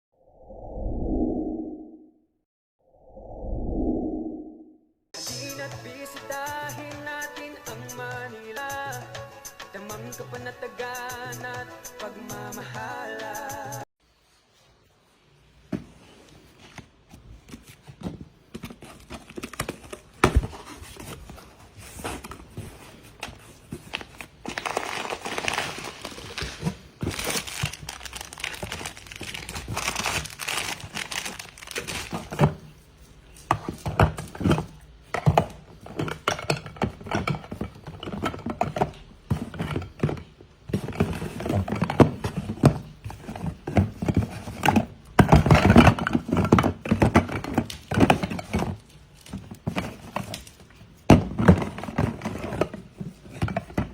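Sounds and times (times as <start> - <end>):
packed goods knocking: 17.4 - 53.9
plastic packaging crinkling: 22.9 - 33.4.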